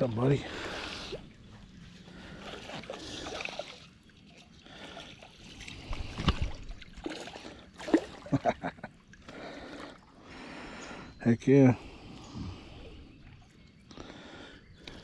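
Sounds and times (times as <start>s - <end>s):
water splashing and sloshing: 0.0s - 11.0s.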